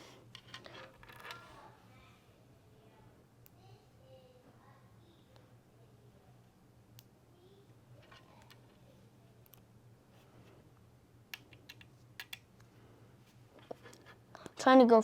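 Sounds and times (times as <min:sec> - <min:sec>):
faint steady hum: 0:00.0 - 0:15.0
magnets clicking together: 0:11.3 - 0:12.5.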